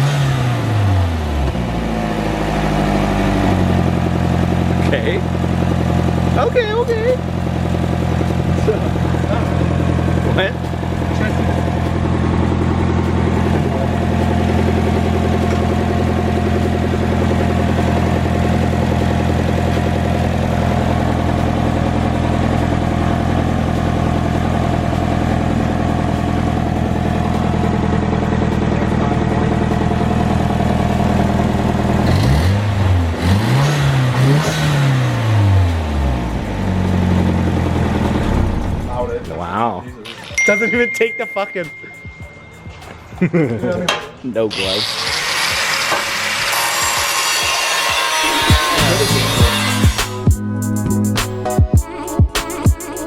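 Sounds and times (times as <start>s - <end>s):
car engine revving: 0.0s - 39.8s
car engine idling: 0.6s - 40.0s.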